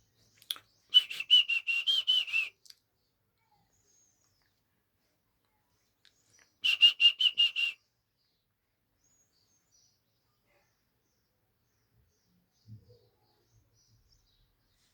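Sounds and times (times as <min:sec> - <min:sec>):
bird chirping: 0:05.8 - 0:14.9.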